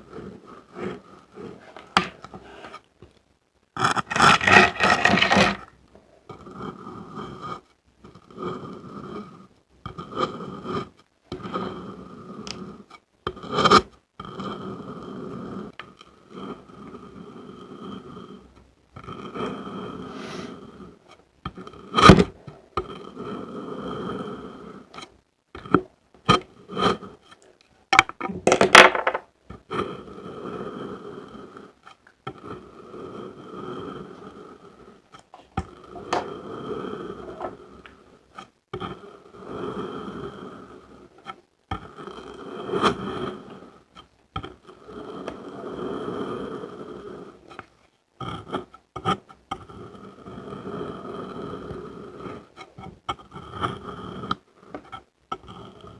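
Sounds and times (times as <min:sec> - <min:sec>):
kinetic sand scraping: 0:20.1 - 0:20.6.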